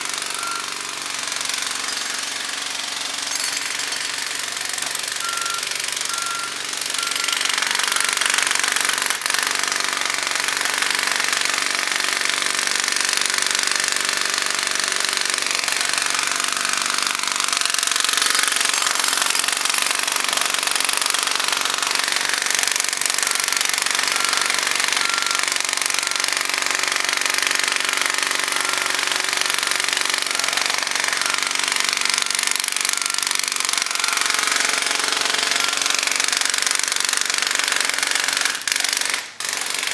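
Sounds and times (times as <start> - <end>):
heavy equipment engine: 0.0 - 9.0
jackhammer hammering pavement: 0.0 - 39.9
faint short beeps: 0.2 - 0.8, 5.1 - 8.2.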